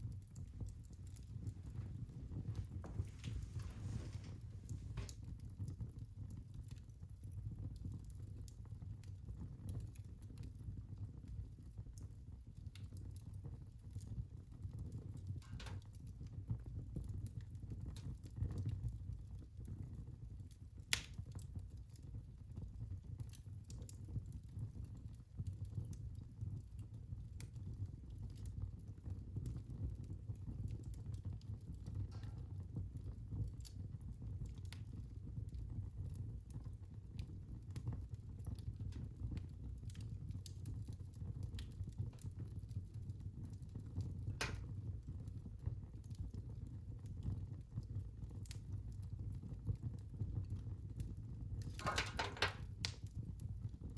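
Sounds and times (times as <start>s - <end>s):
low rumble of flame: 0.0s - 53.9s
wood fire crackling: 0.0s - 53.9s
sharp fire pops: 15.4s - 16.0s, 31.8s - 32.8s, 44.2s - 44.8s, 51.6s - 53.2s.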